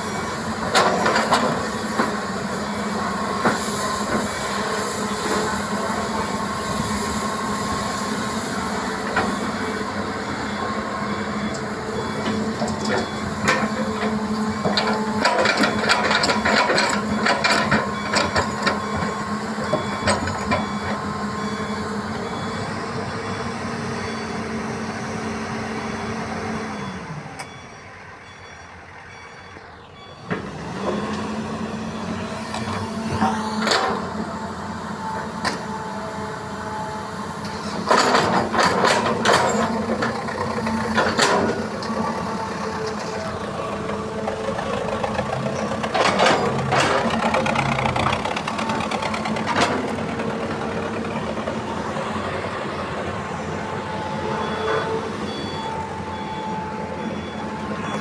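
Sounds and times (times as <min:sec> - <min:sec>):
heavy diesel machinery engine: 0:00.0 - 0:58.0
loud clattering and knocking: 0:37.9 - 0:52.8.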